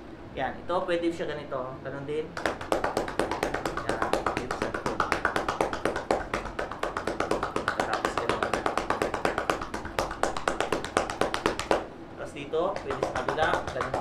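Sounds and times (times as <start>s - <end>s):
hands clapping on a back: 2.4s - 11.9s, 12.7s - 14.0s.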